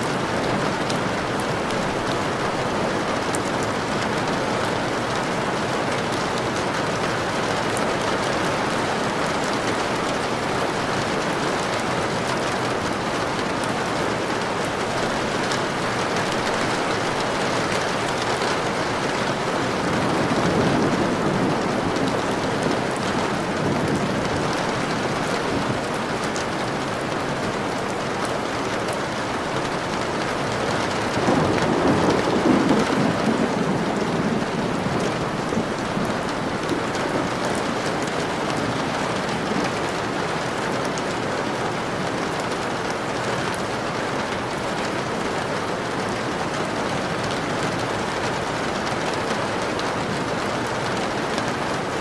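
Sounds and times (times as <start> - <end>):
steady rain: 0.0 - 52.0
low thunder rumbles: 14.4 - 25.9, 31.0 - 38.9.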